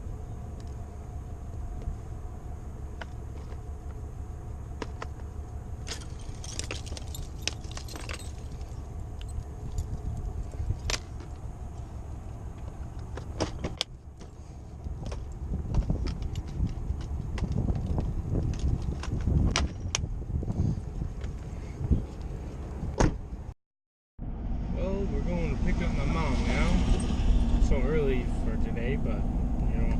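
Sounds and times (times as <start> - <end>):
metallic jingling and clicks: 5.9 - 10.9.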